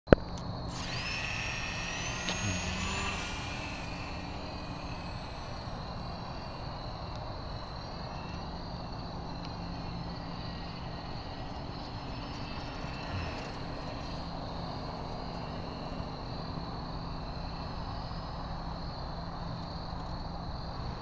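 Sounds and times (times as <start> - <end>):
model plane motor whining: 0.6 - 20.5.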